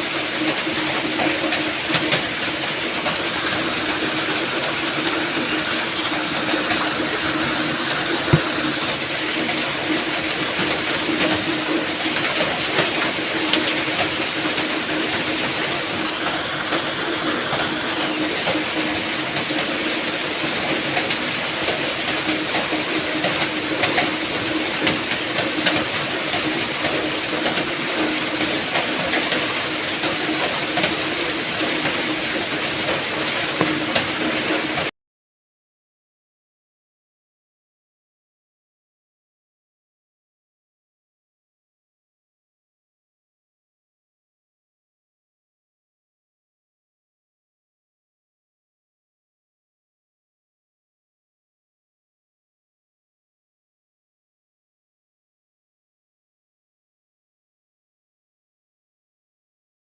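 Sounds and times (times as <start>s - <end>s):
heavy rain hissing: 0.1s - 34.9s
rain drop ticks: 0.3s - 34.9s.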